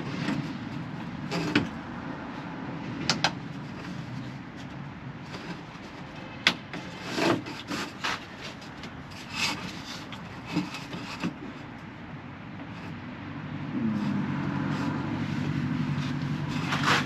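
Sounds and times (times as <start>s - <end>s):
material scraping and rubbing: 3.6s - 11.7s, 13.8s - 17.0s.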